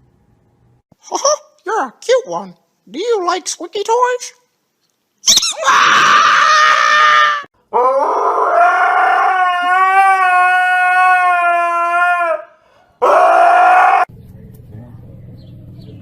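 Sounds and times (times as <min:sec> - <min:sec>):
dog howling: 0:05.5 - 0:14.1.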